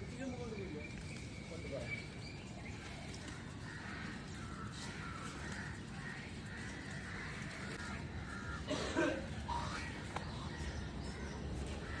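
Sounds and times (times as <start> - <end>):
crows cawing: 3.5 - 12.0.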